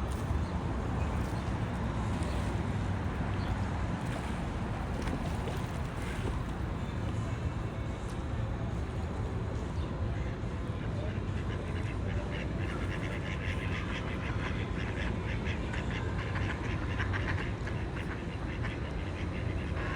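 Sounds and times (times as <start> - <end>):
ducks quacking: 11.3 - 19.9.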